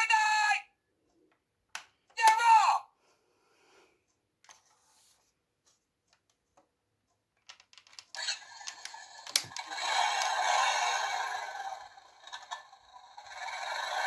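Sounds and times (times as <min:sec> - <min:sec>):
plastic toy clicks: 0:07.4 - 0:10.4.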